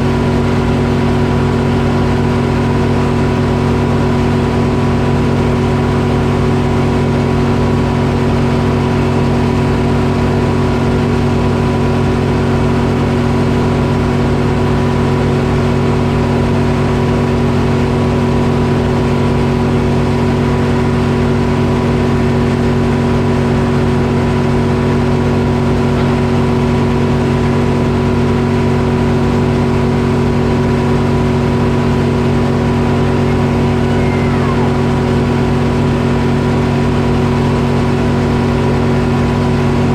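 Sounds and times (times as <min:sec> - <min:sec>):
diesel engine running sawmill: 0:00.0 - 0:39.9.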